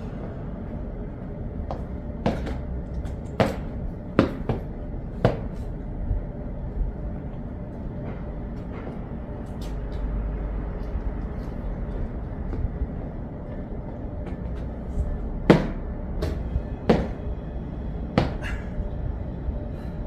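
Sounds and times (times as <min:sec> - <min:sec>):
sharp knocks: 0:03.4 - 0:05.6, 0:15.5 - 0:17.4, 0:18.2 - 0:18.7.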